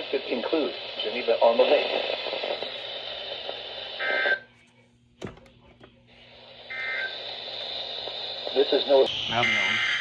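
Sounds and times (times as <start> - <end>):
radio receiver hiss: 0.0 - 4.5, 6.1 - 10.0
buzzing data tone bursts: 9.1 - 10.0.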